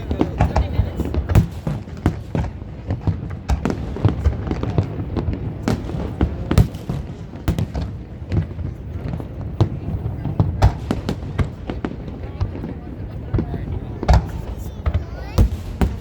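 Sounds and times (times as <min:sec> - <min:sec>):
fireworks bangs: 0:00.0 - 0:16.0
low rumble of explosions: 0:00.0 - 0:16.0.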